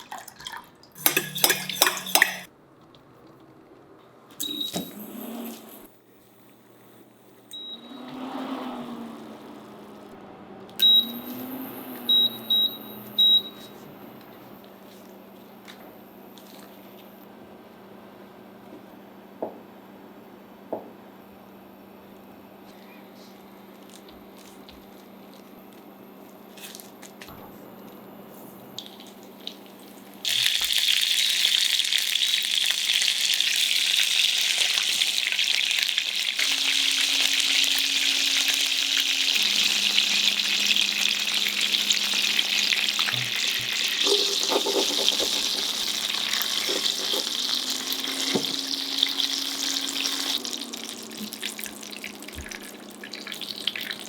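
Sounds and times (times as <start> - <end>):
tofu sizzling in hot oil: 29.4 - 54.0.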